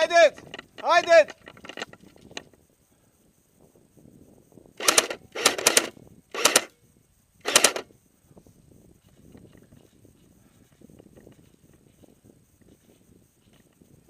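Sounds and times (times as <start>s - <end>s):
airsoft gun firing bursts: 4.8s - 6.7s, 7.4s - 7.9s.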